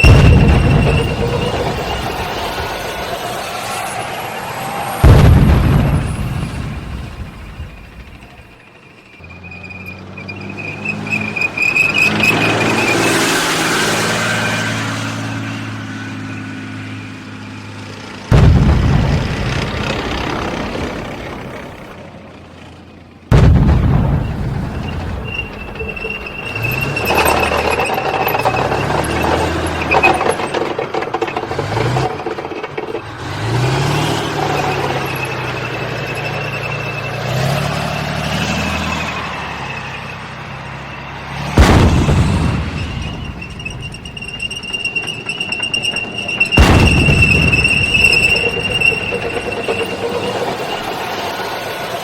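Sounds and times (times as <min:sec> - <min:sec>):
tank gun blasts: 0:00.0 - 0:08.6, 0:18.3 - 0:21.9, 0:23.3 - 0:32.4, 0:41.5 - 0:52.0
high squeal: 0:00.0 - 0:17.3, 0:23.7 - 0:52.0
tank engine revving: 0:00.0 - 0:52.0.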